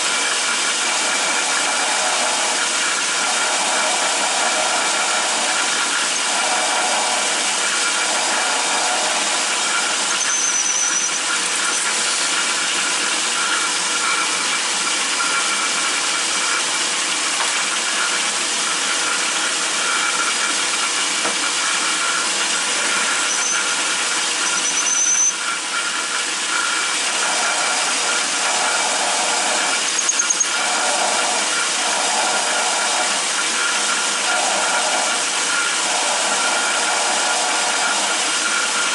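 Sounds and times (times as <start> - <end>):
metal lathe running: 0.0 - 38.9
drill bit squealing in metal: 9.4 - 12.6, 22.8 - 25.9, 29.7 - 31.0.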